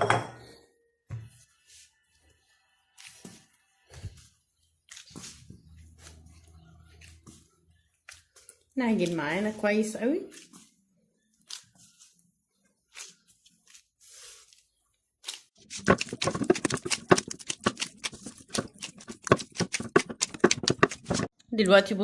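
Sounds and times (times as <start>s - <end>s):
dough squelching slaps: 7.0s - 9.5s, 15.2s - 21.3s.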